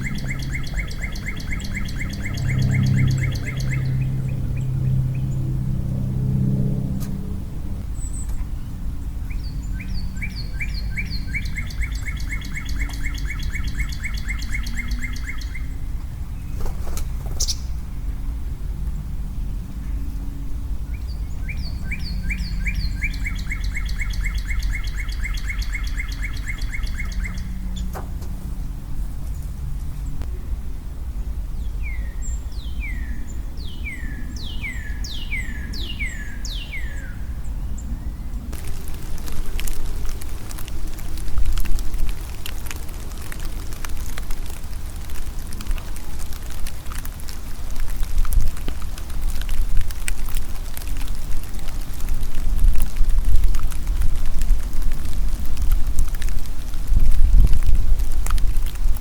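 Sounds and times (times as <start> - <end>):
songbird whistling: 0.0 - 4.1, 9.3 - 15.8, 21.4 - 27.9
bird calling repeated notes: 0.0 - 4.6, 9.8 - 15.8, 21.4 - 27.9
low background rumble: 0.0 - 59.0.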